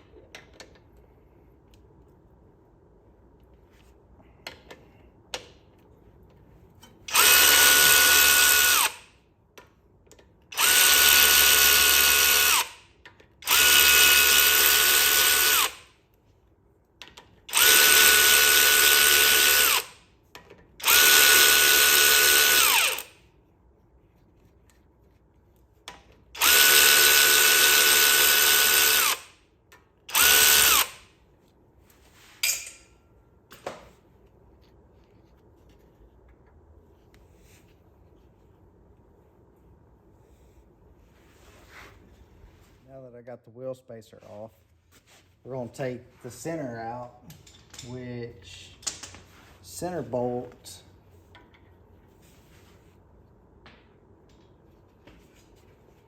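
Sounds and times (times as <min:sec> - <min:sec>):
power drill spinning bolts: 0:17.5 - 0:20.0, 0:20.8 - 0:23.1, 0:26.4 - 0:29.3, 0:30.1 - 0:31.0.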